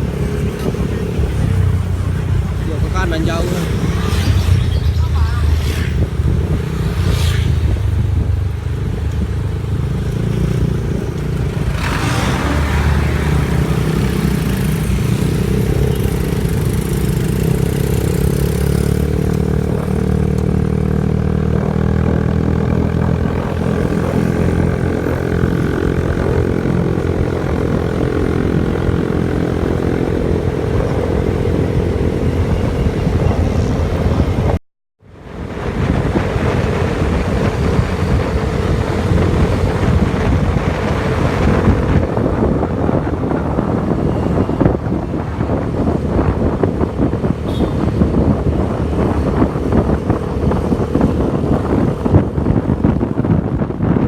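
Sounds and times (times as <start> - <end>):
vehicle engine running: 0.0 - 34.3
road and wind noise: 0.0 - 54.0.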